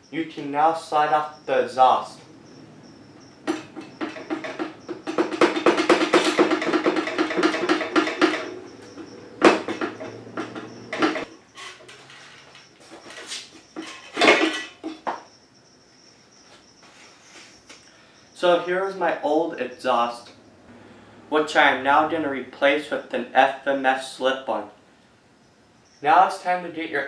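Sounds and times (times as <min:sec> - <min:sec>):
metallic rattling and clicking: 0:02.4 - 0:12.7
metal pipe clanks and knocks: 0:03.3 - 0:12.0, 0:13.8 - 0:15.3.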